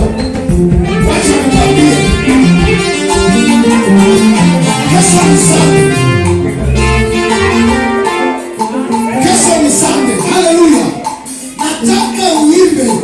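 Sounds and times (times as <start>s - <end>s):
deep bass notes: 0.0s - 8.3s
worship band music with guitar: 0.0s - 13.0s.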